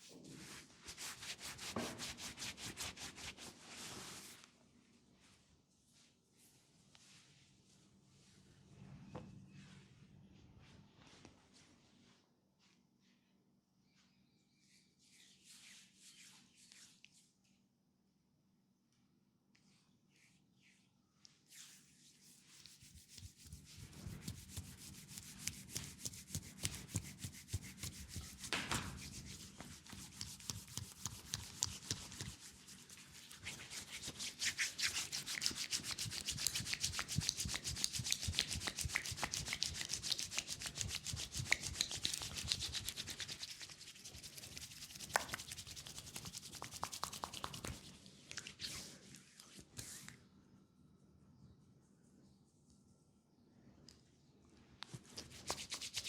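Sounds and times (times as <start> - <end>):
hands rubbing a leg in massage: 0.0 - 4.4, 20.1 - 50.1, 54.8 - 56.0.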